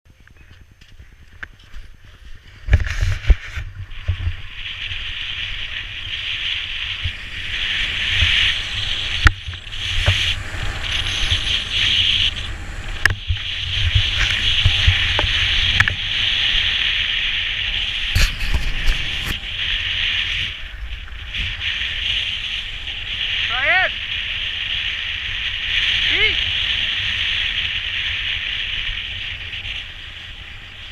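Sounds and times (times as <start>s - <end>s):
wind rumbling on microphone: 0.1s - 30.9s
skis scraping over snow: 0.6s - 30.9s.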